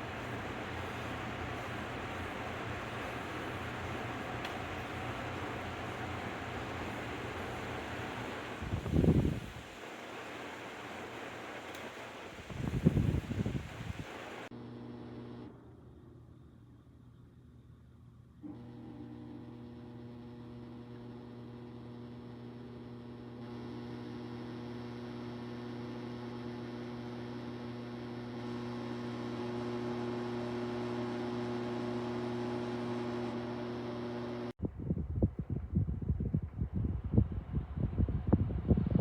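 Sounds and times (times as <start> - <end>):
air gusting onto microphone: 0.0 - 14.5
fan motor hum: 0.0 - 39.0.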